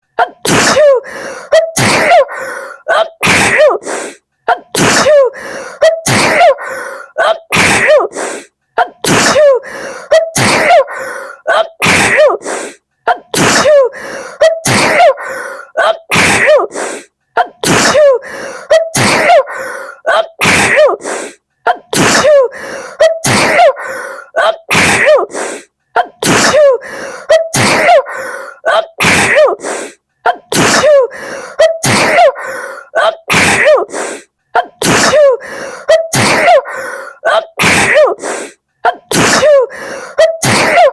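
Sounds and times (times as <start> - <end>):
woman sneezing: 0.2 - 40.9
gasping breaths: 1.0 - 1.6, 2.3 - 4.4, 5.3 - 6.0, 6.6 - 7.2, 8.0 - 8.6, 9.5 - 10.3, 12.3 - 12.9, 13.8 - 14.6, 16.6 - 17.2, 18.2 - 20.1, 20.8 - 21.5, 22.4 - 23.2, 23.8 - 24.4, 25.2 - 25.8, 26.7 - 28.7, 29.4 - 33.0, 33.6 - 34.4, 35.3 - 37.3, 37.9 - 38.7, 39.6 - 40.9.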